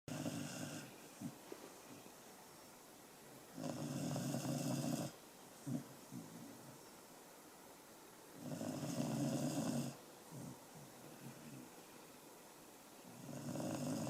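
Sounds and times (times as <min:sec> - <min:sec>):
pet snoring: 0:00.1 - 0:01.4, 0:03.5 - 0:06.5, 0:08.4 - 0:11.7, 0:13.1 - 0:14.0
faint breath sounds: 0:08.4 - 0:12.3.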